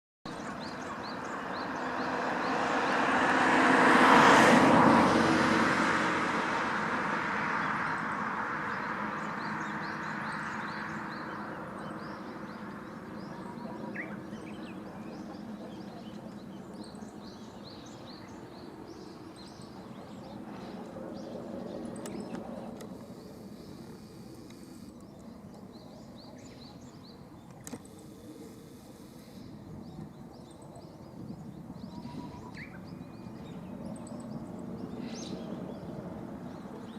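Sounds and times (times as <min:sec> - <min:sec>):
vehicle passing: 0:00.4 - 0:24.9
small birds chirping: 0:08.7 - 0:36.9.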